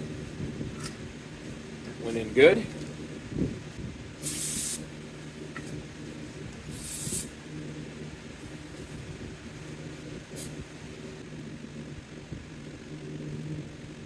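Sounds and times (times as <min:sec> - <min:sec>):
aerosol can spraying: 0:04.2 - 0:05.0, 0:06.7 - 0:07.4, 0:10.4 - 0:10.7.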